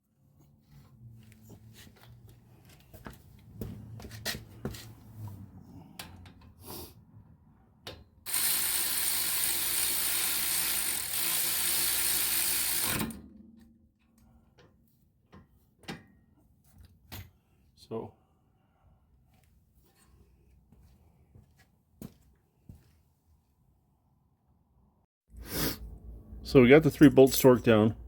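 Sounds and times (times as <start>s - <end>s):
hand ratchet clicking: 8.3s - 13.2s.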